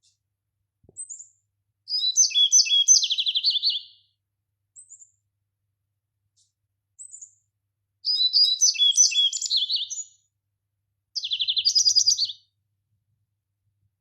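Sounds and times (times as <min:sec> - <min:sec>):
songbird singing: 0:00.9 - 0:04.2, 0:04.8 - 0:05.2, 0:07.0 - 0:07.4, 0:08.0 - 0:10.2, 0:11.2 - 0:12.6.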